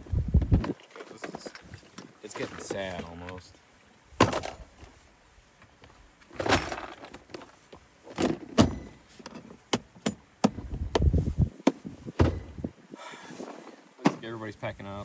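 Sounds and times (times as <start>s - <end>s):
rustling: 0.0s - 15.0s
knocks and clacks of handling: 0.4s - 3.5s, 13.4s - 14.4s.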